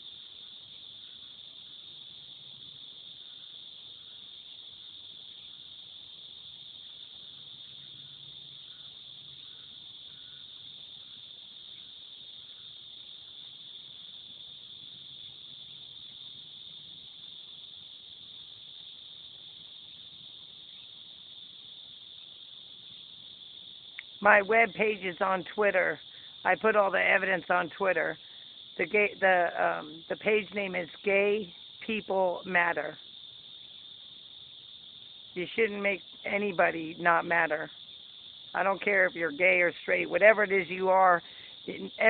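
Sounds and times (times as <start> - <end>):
cicadas buzzing: 0.0 - 42.0.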